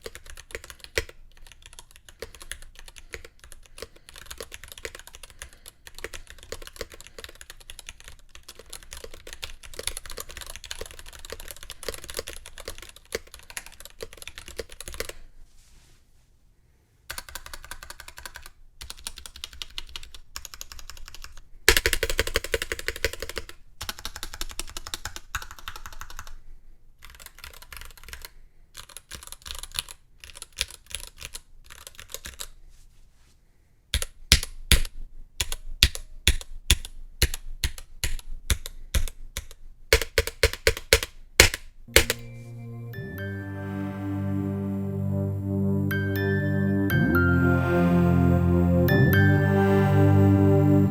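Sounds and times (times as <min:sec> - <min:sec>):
mechanical keyboard typing: 0:00.0 - 0:15.2, 0:17.1 - 0:26.4, 0:27.0 - 0:32.6, 0:34.0 - 0:42.3.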